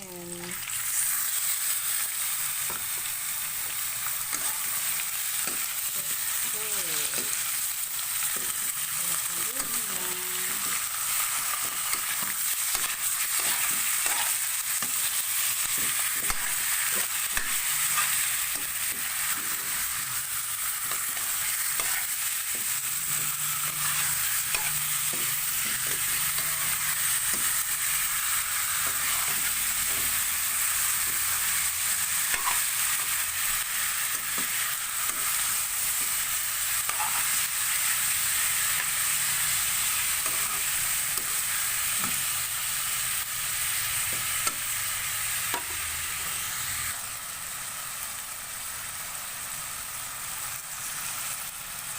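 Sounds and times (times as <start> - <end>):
chicken frying in hot oil: 0.0 - 51.9
utensil scraping against pan: 11.9 - 15.0, 20.8 - 27.5, 36.8 - 37.4.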